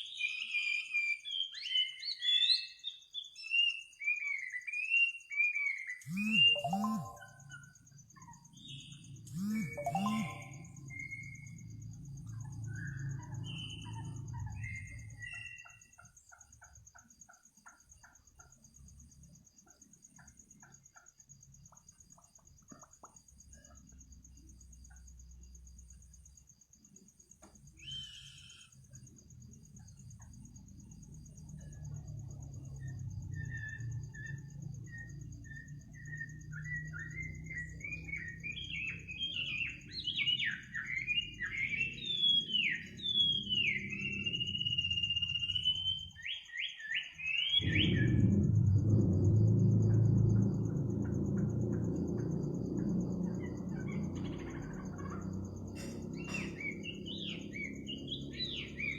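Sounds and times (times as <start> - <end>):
bird chirping: 0.0 - 58.9
night insects trilling: 0.0 - 58.9
low rumble: 47.6 - 56.3.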